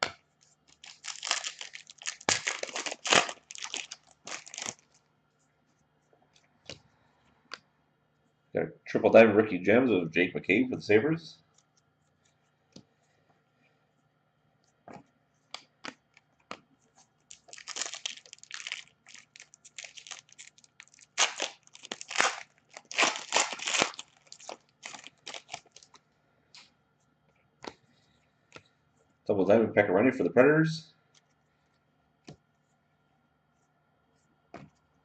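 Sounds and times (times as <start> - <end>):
wrapper tearing and crinkling: 0.7 - 4.8, 17.3 - 26.0
cards clicking and tapping: 14.9 - 16.7.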